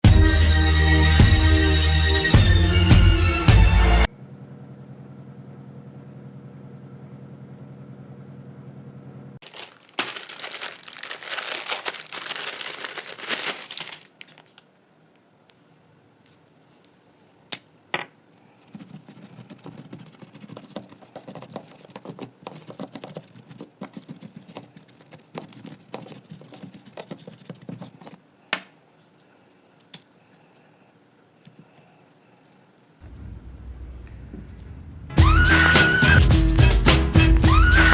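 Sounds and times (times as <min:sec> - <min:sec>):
plastic packaging crinkling and tearing: 0:09.4 - 0:14.7
steady musical tone: 0:33.1 - 0:37.9.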